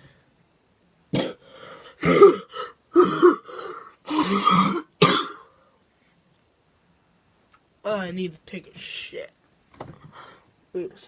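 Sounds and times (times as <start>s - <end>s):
person coughing: 1.1s - 1.4s, 2.0s - 5.5s.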